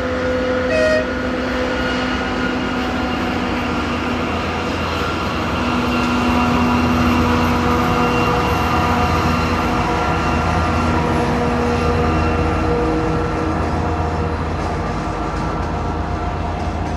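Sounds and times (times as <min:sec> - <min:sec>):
diesel engine drone: 0:00.0 - 0:16.9
turbocharger whistle: 0:00.3 - 0:01.2.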